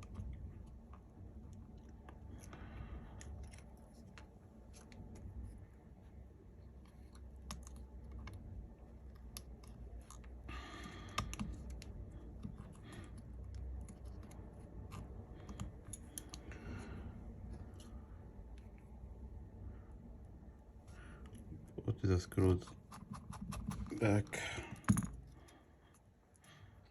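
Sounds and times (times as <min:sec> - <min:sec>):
small parts clicking and tapping: 0:06.8 - 0:16.7, 0:22.6 - 0:26.9.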